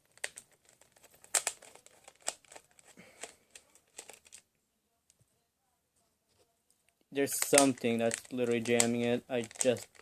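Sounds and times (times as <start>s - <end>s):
plastic toy clicking and rattling: 0.0s - 4.5s, 7.3s - 10.0s.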